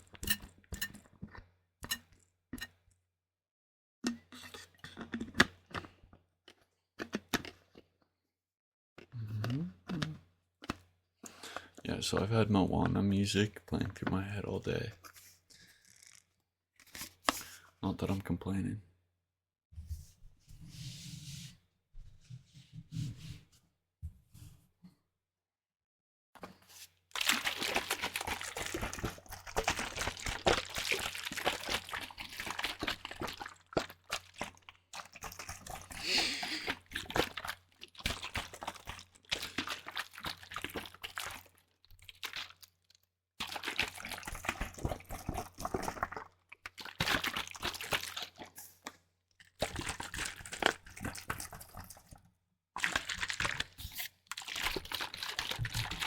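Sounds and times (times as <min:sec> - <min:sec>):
plastic bottle crinkling: 0:26.8 - 0:49.0, 0:52.8 - 0:56.0
liquid crackling and dripping: 0:27.1 - 0:56.0.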